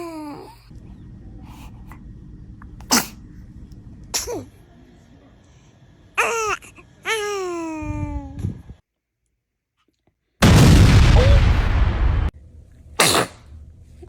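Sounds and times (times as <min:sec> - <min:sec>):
baby sneezing: 0:02.8 - 0:03.2, 0:04.1 - 0:04.5, 0:13.0 - 0:13.5
baby fussing cries: 0:06.2 - 0:07.8.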